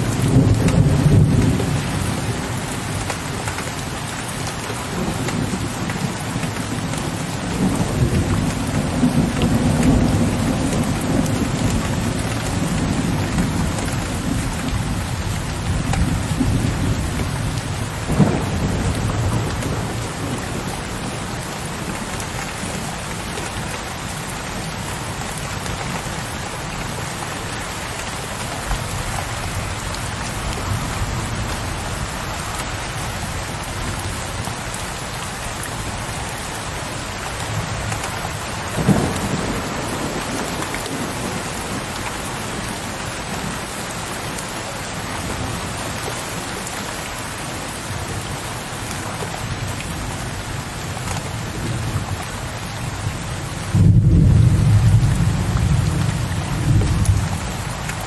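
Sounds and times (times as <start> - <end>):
low rolling thunder: 0.0 - 2.7, 5.0 - 21.1, 38.7 - 41.9, 52.9 - 58.0
steady rain: 0.0 - 58.0
loud thunderclap: 18.0 - 20.4, 53.6 - 57.5.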